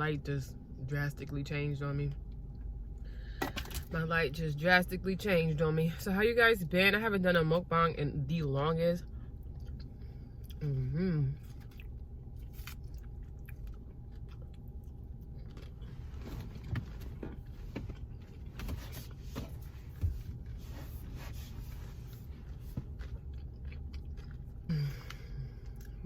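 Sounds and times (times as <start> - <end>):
steady low hum: 0.0 - 26.0
close chewing with wet mouth sounds: 9.0 - 20.2, 21.7 - 26.0.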